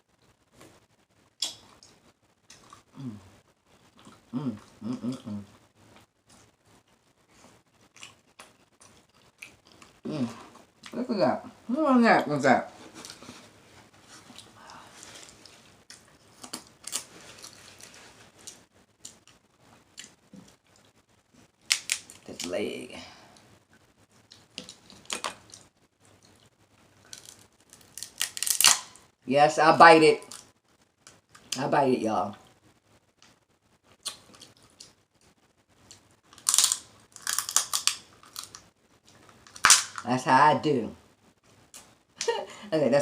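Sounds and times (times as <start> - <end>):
crab shell cracking: 21.6 - 22.4, 27.1 - 29.0, 35.9 - 38.7, 39.3 - 40.0.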